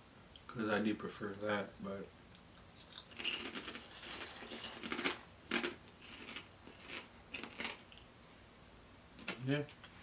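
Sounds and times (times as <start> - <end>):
pork rinds crackling and crunching: 2.8 - 8.0.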